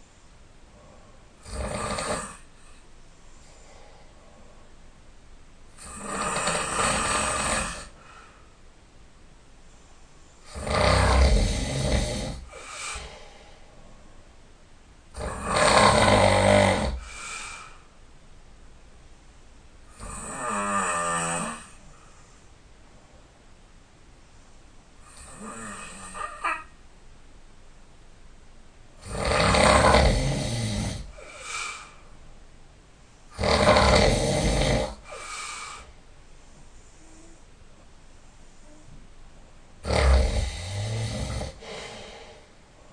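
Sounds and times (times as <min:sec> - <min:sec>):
soft breath: 0:00.0 - 0:01.4, 0:02.4 - 0:05.4, 0:07.7 - 0:08.8, 0:12.4 - 0:14.5, 0:17.0 - 0:18.1, 0:21.7 - 0:25.1, 0:31.0 - 0:33.4, 0:35.0 - 0:39.7, 0:41.4 - 0:42.9
person snoring loudly: 0:01.4 - 0:02.5, 0:05.8 - 0:08.0, 0:10.4 - 0:13.2, 0:15.2 - 0:17.4, 0:19.9 - 0:21.8, 0:25.0 - 0:26.6, 0:29.0 - 0:31.9, 0:33.3 - 0:35.9, 0:39.8 - 0:42.3.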